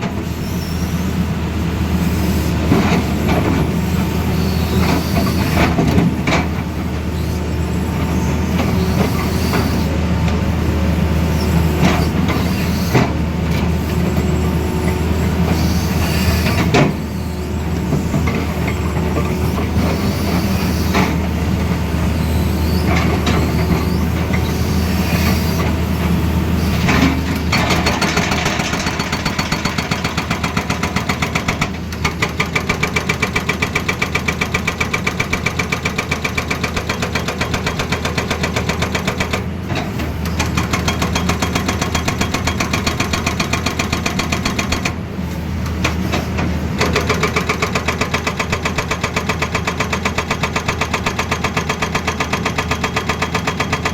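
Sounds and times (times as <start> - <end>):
diesel engine running: 0.0 - 53.9
hydraulic breaker hammering: 26.9 - 39.4.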